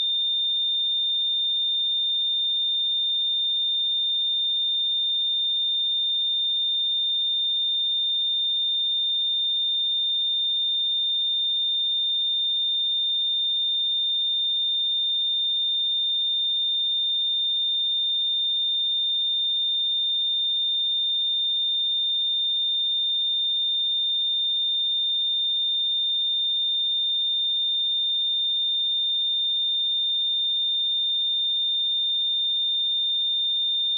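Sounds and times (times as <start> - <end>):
high-pitched sine test tone: 19.7 - 33.9.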